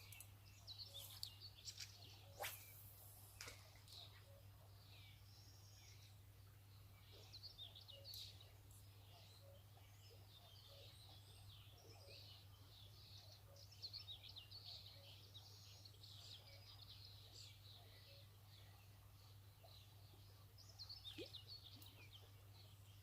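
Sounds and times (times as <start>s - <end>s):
small birds chirping: 0.0s - 23.0s.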